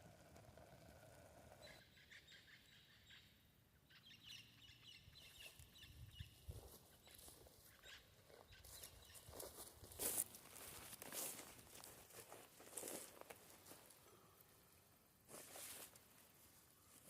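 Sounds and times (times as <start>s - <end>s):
faint birds chirping: 0.0s - 10.3s.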